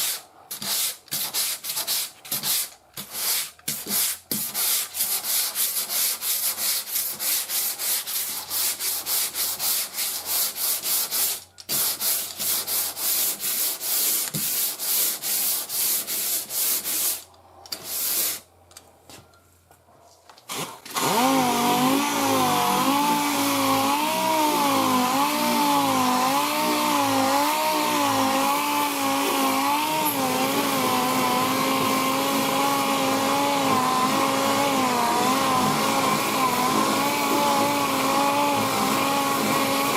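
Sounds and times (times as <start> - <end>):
sanding block on car panel: 0.0 - 18.5.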